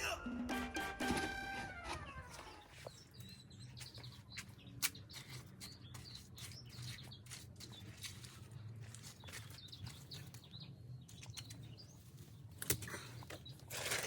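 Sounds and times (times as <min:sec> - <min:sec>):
background music: 0:00.0 - 0:02.7
birds chirping: 0:00.0 - 0:13.7.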